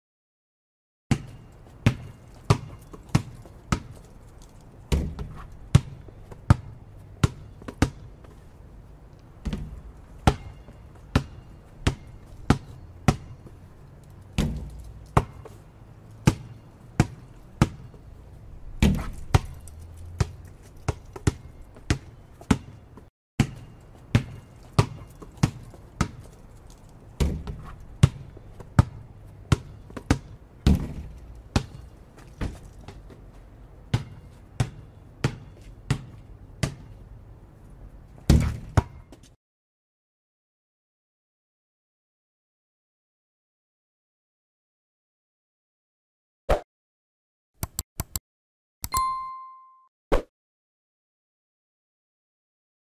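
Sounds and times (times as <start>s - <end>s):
basketball bouncing on hard floor: 1.1s - 4.1s, 4.9s - 8.1s, 9.4s - 13.4s, 14.4s - 15.5s, 18.8s - 22.8s, 23.4s - 26.4s, 27.2s - 33.0s, 33.9s - 36.9s, 38.3s - 39.0s.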